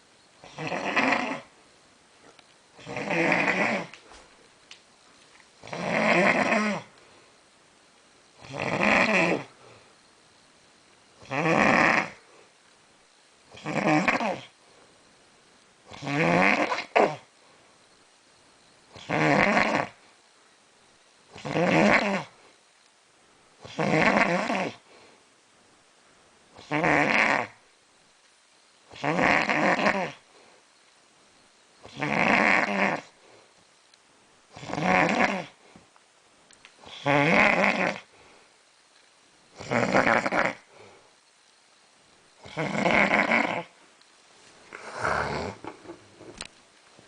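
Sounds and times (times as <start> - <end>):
man snoring loudly: 0.4 - 1.5, 2.8 - 3.9, 5.6 - 6.9, 8.4 - 9.5, 11.2 - 12.2, 13.6 - 14.5, 15.9 - 17.2, 19.0 - 20.0, 21.4 - 22.3, 23.6 - 24.8, 26.6 - 27.6, 28.9 - 30.2, 31.9 - 33.1, 34.6 - 35.5, 36.9 - 38.1, 39.6 - 40.6, 42.4 - 43.7, 44.7 - 45.6
sharp snort: 44.7 - 45.7.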